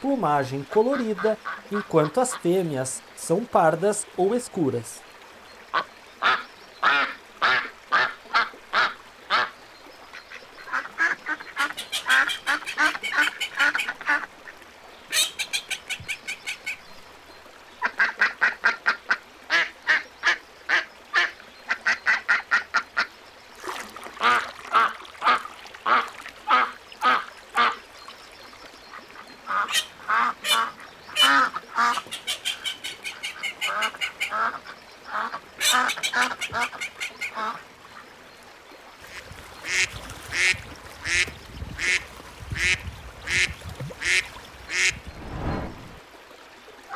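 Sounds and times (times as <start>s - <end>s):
ducks quacking: 10.7s - 14.3s, 29.5s - 37.6s, 39.1s - 45.1s.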